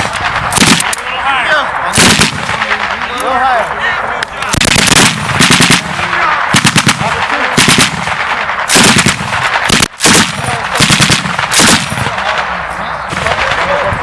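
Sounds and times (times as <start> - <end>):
steady distant gunfire: 0.0 - 14.0
machine gun bursts: 2.0 - 2.8, 4.6 - 12.5.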